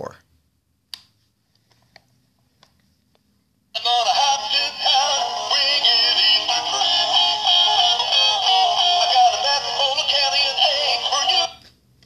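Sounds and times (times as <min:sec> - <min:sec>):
toy singing over music: 0:03.8 - 0:11.6.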